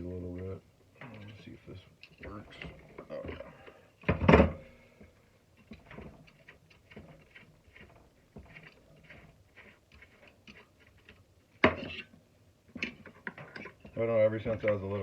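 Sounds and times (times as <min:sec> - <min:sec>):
hand tool clicking and scraping: 0:05.6 - 0:14.0.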